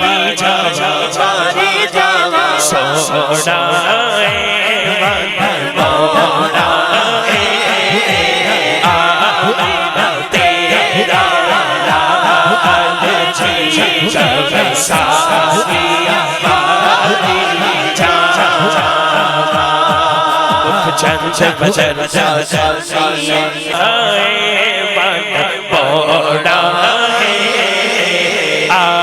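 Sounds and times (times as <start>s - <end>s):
other voices: 0.0s - 25.5s
deep drum beats: 4.3s - 22.8s.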